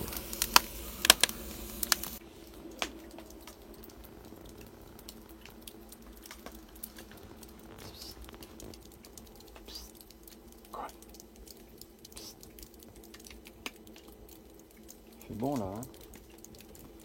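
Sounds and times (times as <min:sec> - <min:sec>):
faint fire hiss: 0:00.0 - 0:17.0
wood fire crackling and popping: 0:00.0 - 0:17.0.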